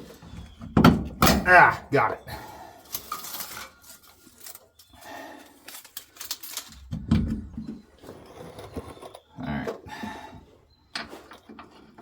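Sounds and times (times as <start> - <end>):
tools and metal hardware clicking: 2.8 - 5.0.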